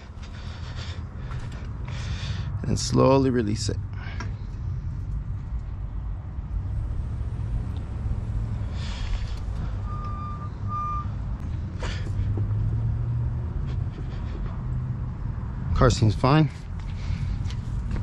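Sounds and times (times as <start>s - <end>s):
steady low hum: 3.4s - 15.6s
short electronic beeps: 9.8s - 11.2s.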